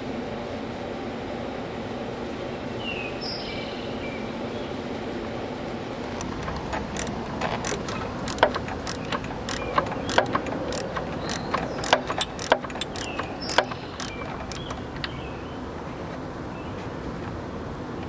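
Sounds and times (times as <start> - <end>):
metal tools clinking: 6.1 - 15.2.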